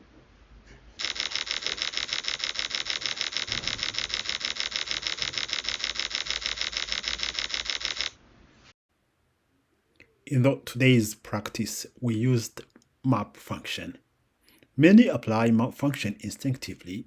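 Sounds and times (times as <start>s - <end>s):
rapid even clicking: 1.0s - 8.1s.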